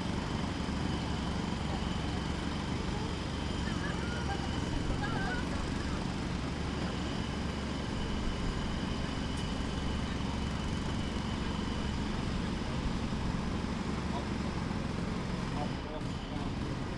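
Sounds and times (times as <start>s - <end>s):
construction machinery engine rumble: 0.0s - 16.9s
faint high whine: 0.0s - 16.9s.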